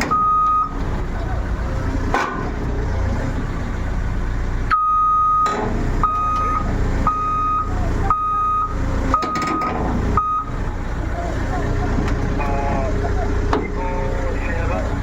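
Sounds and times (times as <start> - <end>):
reversing alarm beeping: 0.0 - 0.8, 4.7 - 10.6
diesel engine running: 0.0 - 15.0.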